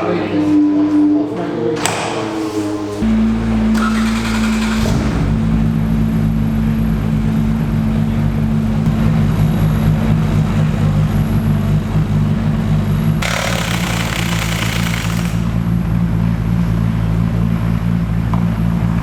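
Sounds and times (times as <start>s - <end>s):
race car engine running: 3.0s - 19.0s.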